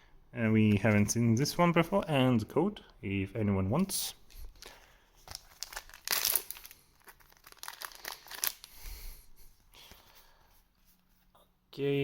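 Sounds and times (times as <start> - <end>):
foil wrapper crinkling and tearing: 4.4 - 8.8.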